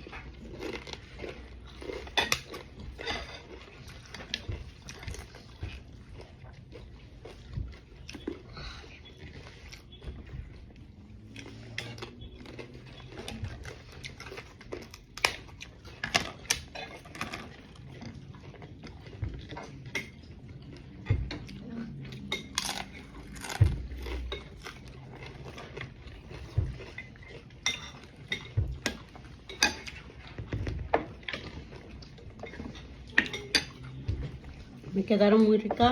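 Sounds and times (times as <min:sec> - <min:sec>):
crunching and chewing food: 0:00.0 - 0:35.9
tableware clinking: 0:32.4 - 0:34.2.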